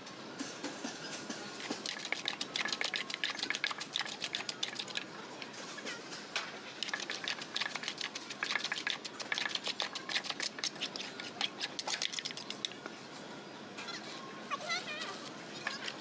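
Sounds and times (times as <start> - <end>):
utensils clicking and tapping: 1.2 - 5.1, 6.8 - 12.8.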